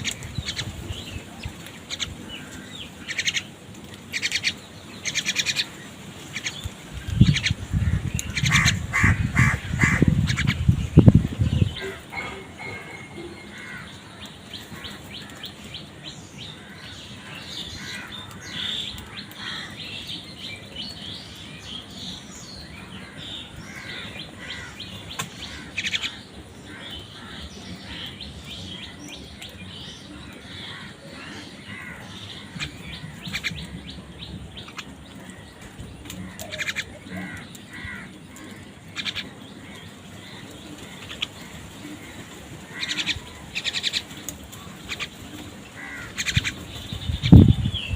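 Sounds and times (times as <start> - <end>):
birds chirping: 0.0 - 47.9
crow cawing: 8.4 - 10.4, 11.8 - 15.4, 17.8 - 19.8, 23.7 - 24.8, 30.5 - 33.5, 36.3 - 39.8, 45.8 - 46.5.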